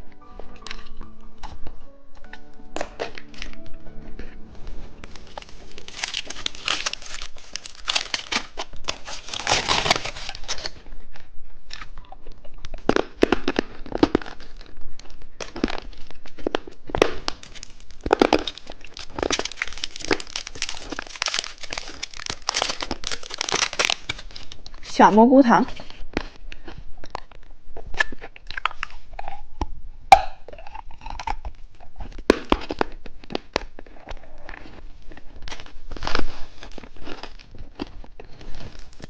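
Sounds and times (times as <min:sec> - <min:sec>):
plastic wrapper crinkling: 0:04.8 - 0:25.0, 0:30.9 - 0:39.0.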